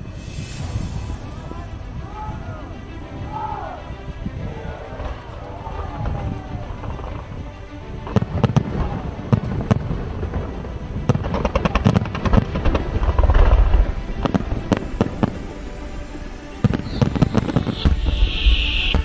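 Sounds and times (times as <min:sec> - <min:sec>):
firework crackling: 0:00.0 - 0:02.8.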